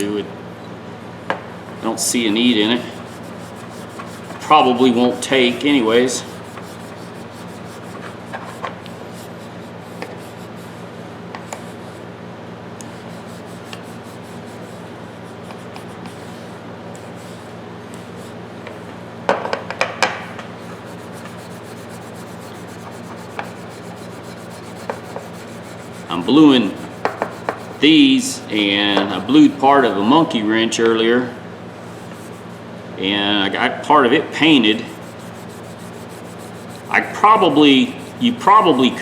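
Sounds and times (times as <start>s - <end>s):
rubbing on steel pliers: 1.7s - 12.1s, 12.8s - 18.9s, 20.6s - 30.4s, 31.8s - 32.7s, 34.1s - 39.0s
low steady hum: 20.4s - 39.0s.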